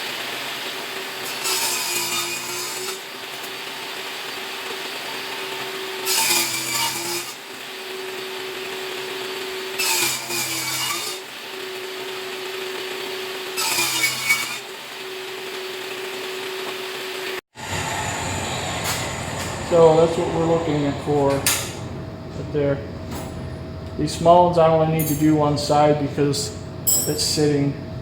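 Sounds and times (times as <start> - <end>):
table saw running: 0.0 - 23.6
saw cutting through boards: 0.4 - 21.9.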